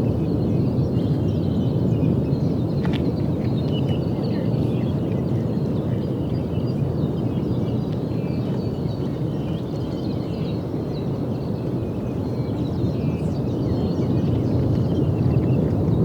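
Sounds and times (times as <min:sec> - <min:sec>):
lava fountain deep rumble: 0:12.2 - 0:16.0.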